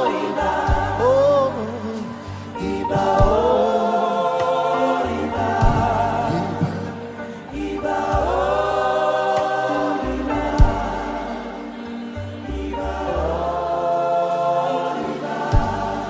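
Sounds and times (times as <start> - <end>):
low sustained bass: 0.0 - 4.0, 5.0 - 9.1, 10.0 - 13.9
choir singing held chords: 0.0 - 16.0.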